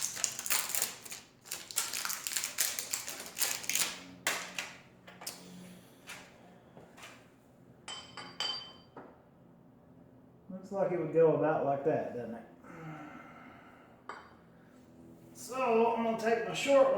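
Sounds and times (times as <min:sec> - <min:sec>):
small metal parts clicking: 0:00.0 - 0:05.4.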